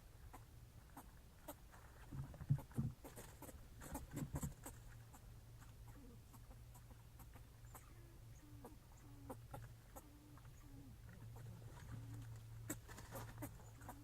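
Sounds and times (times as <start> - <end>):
steady low hum: 0.0 - 14.0
low-pitched animal calls: 5.9 - 14.0.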